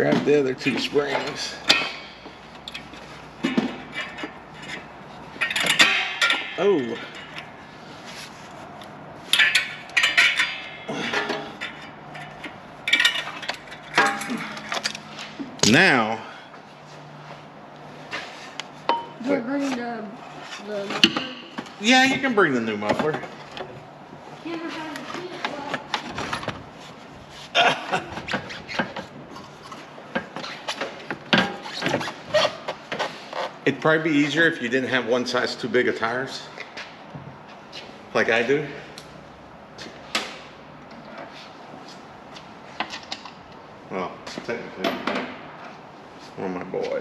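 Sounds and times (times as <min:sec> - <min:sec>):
parts scraping: 0:00.1 - 0:15.8, 0:16.6 - 0:33.8
metal parts clinking and clanking: 0:00.6 - 0:07.6, 0:09.3 - 0:15.3.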